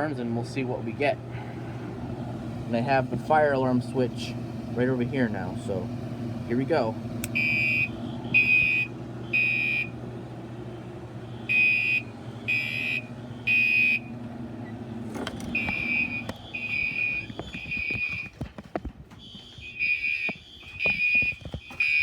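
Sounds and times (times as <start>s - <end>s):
fire alarm beeps: 7.4s - 9.9s, 11.5s - 14.1s, 15.4s - 18.5s, 19.1s - 22.0s.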